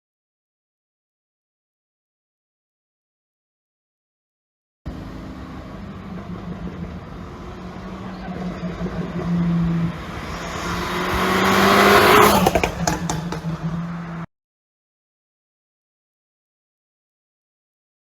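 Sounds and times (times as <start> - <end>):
car engine revving: 4.9 - 14.3
exhaust pops and crackles: 10.3 - 13.8.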